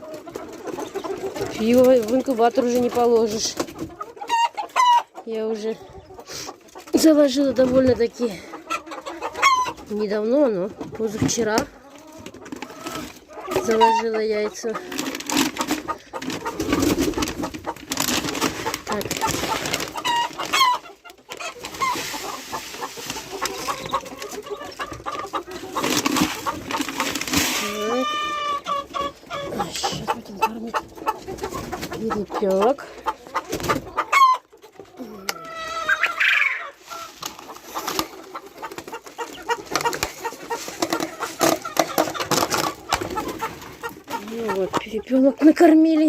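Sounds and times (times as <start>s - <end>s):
hens clucking: 0.0s - 46.0s
rustling and clicking: 25.0s - 27.8s, 37.1s - 44.2s.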